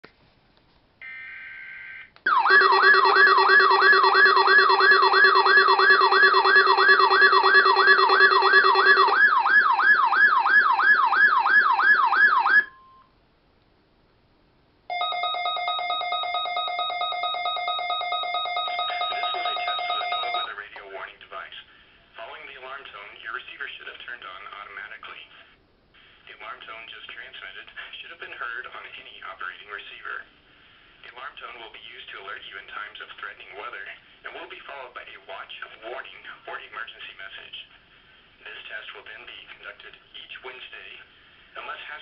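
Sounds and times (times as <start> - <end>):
electronic siren alarm warbling: 1.0 - 12.8, 14.9 - 20.5
steady alert tone: 2.3 - 9.4.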